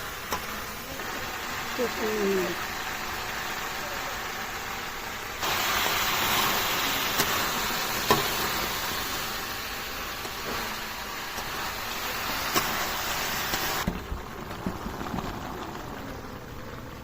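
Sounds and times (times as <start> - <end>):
spice paste sizzling in pot: 0.0 - 16.0.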